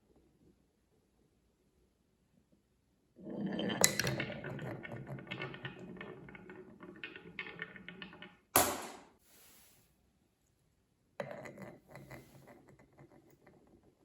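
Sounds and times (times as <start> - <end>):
marbles rattling down wooden track: 3.6 - 8.9
loud knock: 8.6 - 9.0.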